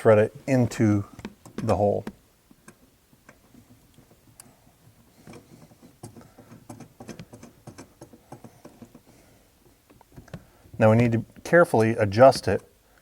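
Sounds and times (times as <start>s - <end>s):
threads turning with small clicks: 1.1s - 10.5s.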